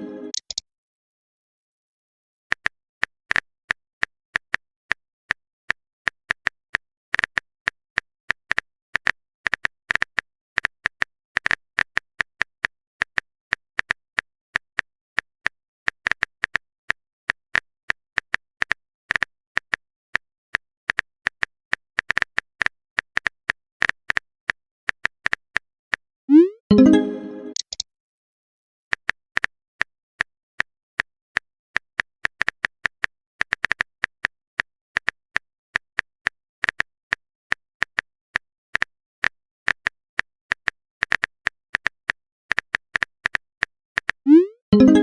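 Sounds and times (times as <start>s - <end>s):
keyboard typing clicks: 0.0s - 0.6s, 26.3s - 27.8s, 44.0s - 45.0s.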